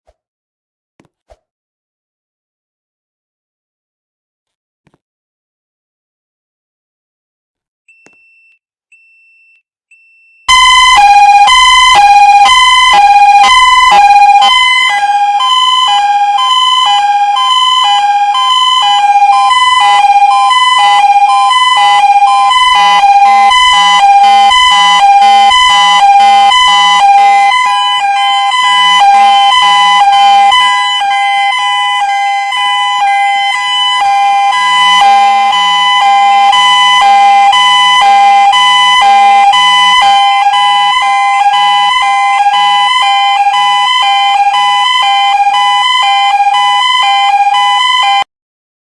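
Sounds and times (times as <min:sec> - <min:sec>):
faint short beeps: 0:07.9 - 0:10.5
two-pitch fire alarm sounders: 0:07.9 - 0:48.3.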